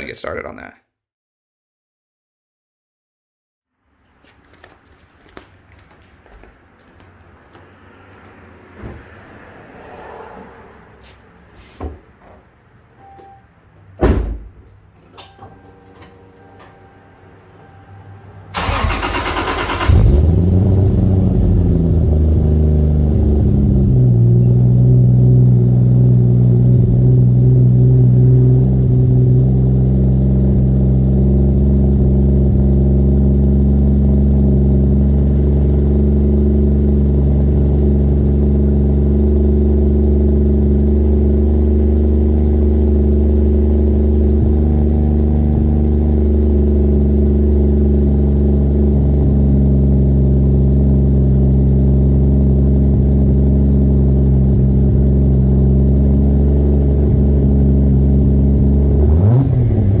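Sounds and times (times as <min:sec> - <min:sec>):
car engine revving: 0:07.5 - 0:11.2, 0:17.6 - 1:00.0
car engine idling: 0:17.6 - 1:00.0.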